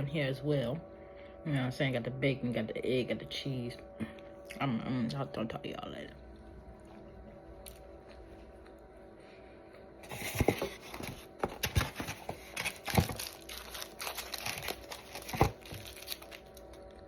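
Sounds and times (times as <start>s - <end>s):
sandwich bites and crunching: 11.6s - 17.0s.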